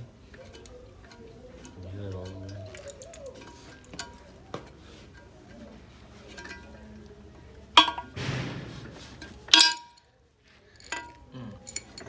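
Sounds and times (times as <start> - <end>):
metal tools clinking: 0.3 - 4.4, 5.1 - 7.0, 9.1 - 10.0, 10.7 - 12.0.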